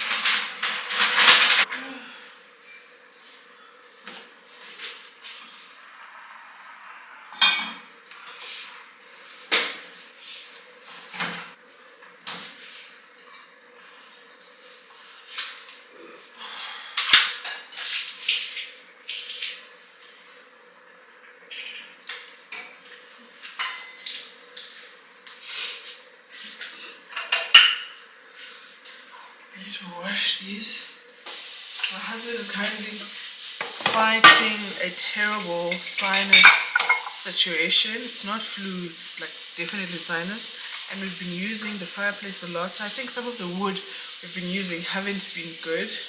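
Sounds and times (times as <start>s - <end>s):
crockery and pans clinking: 33.7s - 34.6s, 35.4s - 37.2s
dishes and cutlery clattering: 35.4s - 37.2s.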